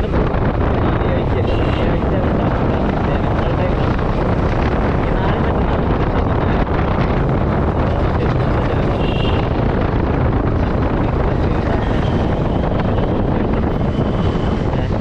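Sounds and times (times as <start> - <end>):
motorcycle engine rumbling: 0.0 - 15.0
wind buffeting microphone: 0.0 - 15.0.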